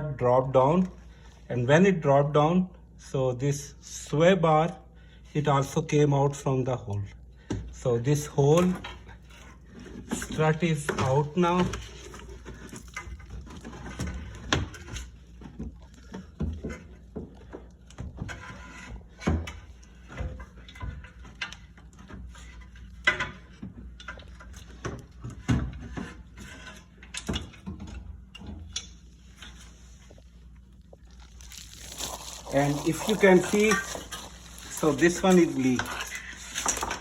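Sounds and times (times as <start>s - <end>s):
tools and metal parts clinking: 32.5s - 37.0s.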